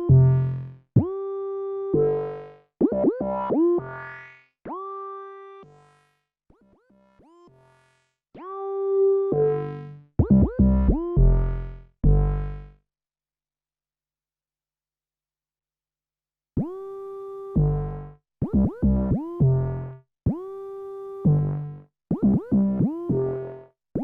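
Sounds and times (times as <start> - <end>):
analog synthesizer notes: 9.3 - 12.7.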